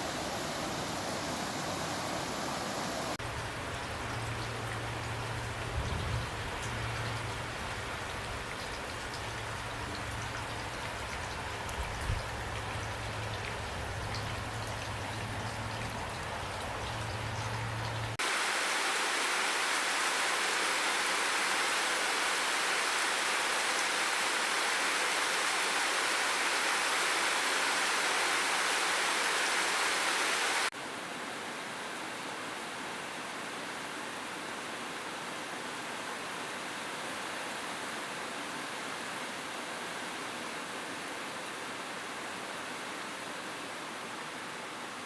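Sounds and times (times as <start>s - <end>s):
rushing hiss of pouring water: 0.0s - 30.7s
rain falling: 0.0s - 30.8s.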